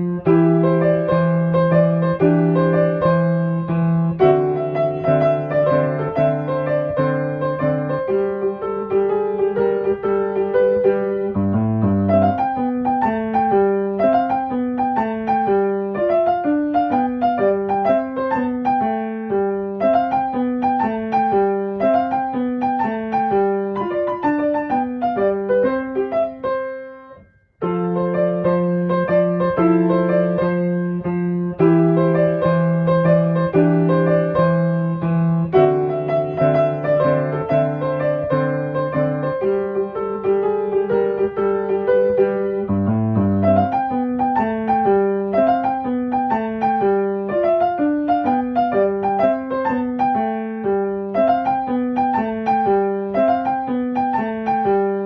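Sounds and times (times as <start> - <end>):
piano music: 0.0 - 55.0.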